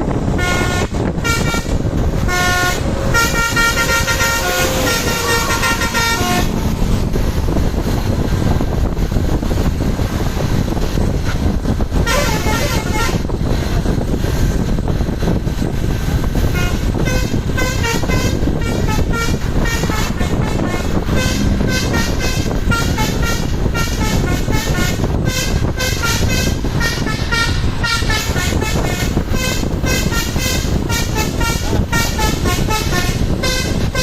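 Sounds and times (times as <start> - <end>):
bus engines rumbling: 0.0 - 34.0
road noise: 0.0 - 34.0
musical bus horn melody: 0.3 - 7.3, 11.2 - 13.4, 16.4 - 34.0.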